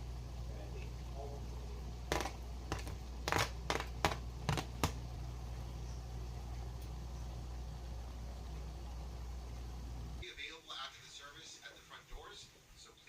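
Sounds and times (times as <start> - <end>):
steady low hum: 0.0 - 10.3
sharp clicks and knocks: 2.1 - 5.0.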